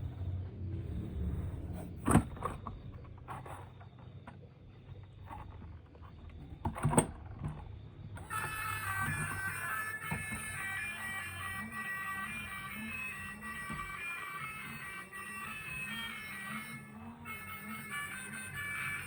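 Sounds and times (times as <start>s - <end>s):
music: 8.2s - 19.0s.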